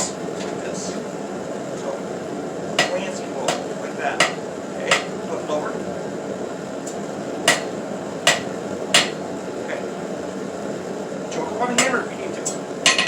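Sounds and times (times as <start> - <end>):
hammer striking steel on anvil: 2.8 - 5.2, 7.5 - 7.7, 8.3 - 9.2, 11.8 - 12.0.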